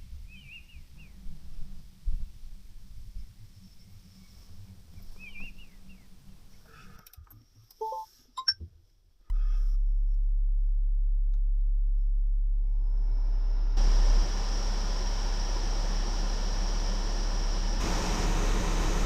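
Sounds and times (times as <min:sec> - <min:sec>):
bird chirping: 0:00.3 - 0:01.3, 0:03.2 - 0:06.3
car engine humming: 0:12.6 - 0:19.0.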